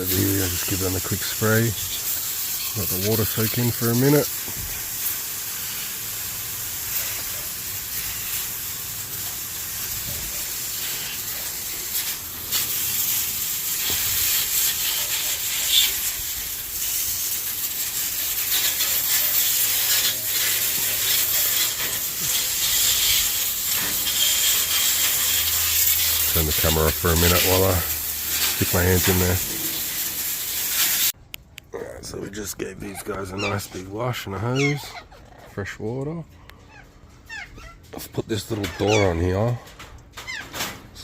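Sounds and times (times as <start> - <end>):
garden hose spraying water: 0.0 - 31.2.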